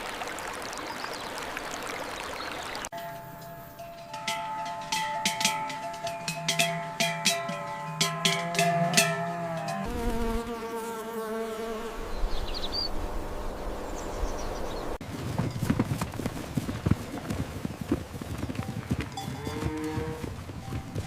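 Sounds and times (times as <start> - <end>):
cowbells clanking: 2.9 - 9.9, 15.2 - 16.2, 18.3 - 21.0
buzzing insect: 9.4 - 12.4.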